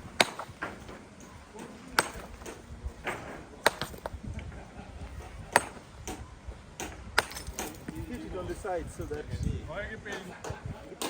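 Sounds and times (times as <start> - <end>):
hammer striking stone: 0.1 - 1.0, 2.0 - 4.2, 5.5 - 6.2, 6.8 - 7.9.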